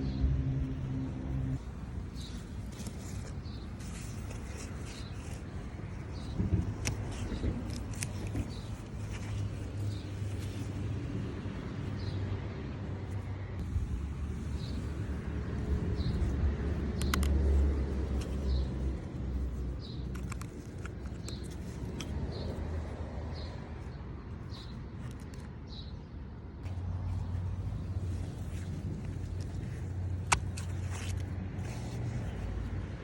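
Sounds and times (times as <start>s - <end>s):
sharp clicks: 16.8s - 18.7s.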